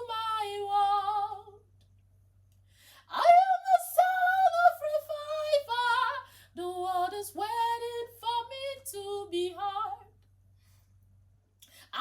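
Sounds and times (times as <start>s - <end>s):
woman singing with vibrato: 0.0s - 1.6s, 3.1s - 10.1s.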